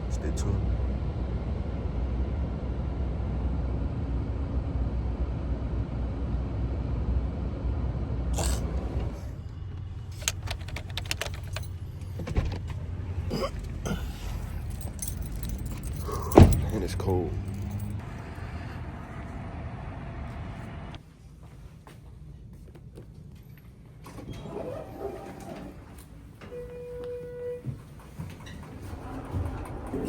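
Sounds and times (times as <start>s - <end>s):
road rumble inside moving car: 0.0s - 21.0s
sharp clicks and light rattles: 9.8s - 12.8s.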